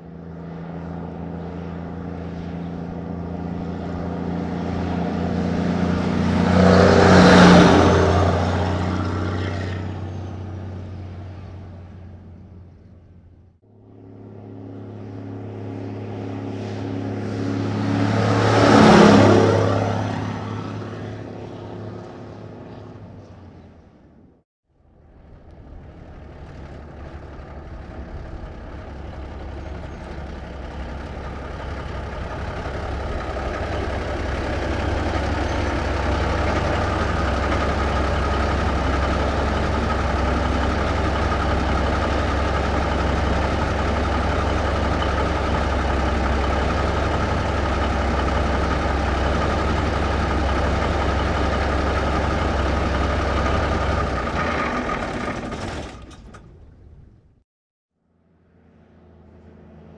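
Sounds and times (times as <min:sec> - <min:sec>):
truck engine idling with deep rumble: 0:25.2 - 0:56.8.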